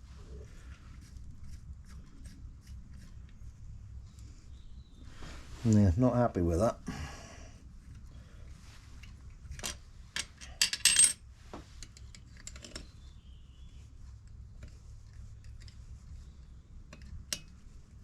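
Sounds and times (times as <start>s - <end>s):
low steady hum: 0.0s - 18.0s
metal tools clinking: 9.6s - 11.2s.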